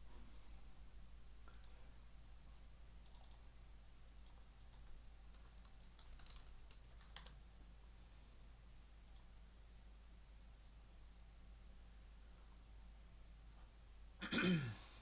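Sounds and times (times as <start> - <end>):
faint light clicks and ticks: 9.0 - 9.4.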